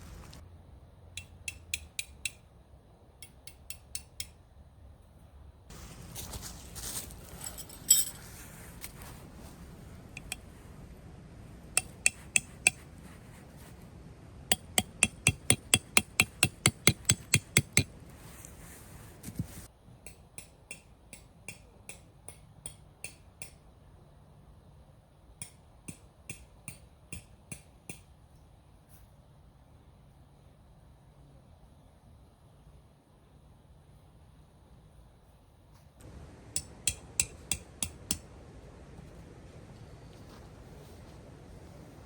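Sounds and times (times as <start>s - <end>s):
sharp metallic clinks: 7.0s - 8.4s.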